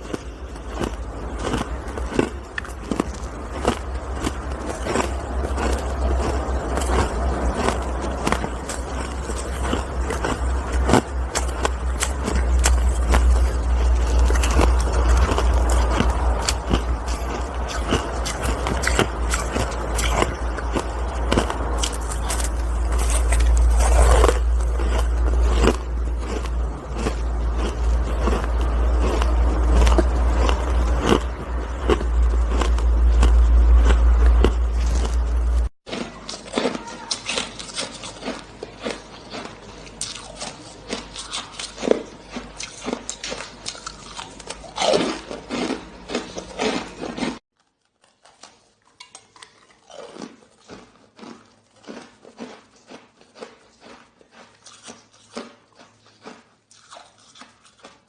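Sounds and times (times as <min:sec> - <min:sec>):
steady low rumble: 0:00.0 - 0:35.7
crunching shaved ice: 0:00.0 - 0:58.0.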